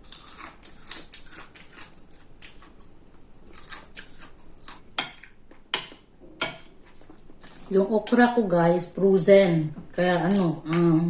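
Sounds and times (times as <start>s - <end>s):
crunchy chewing: 0.0s - 5.4s.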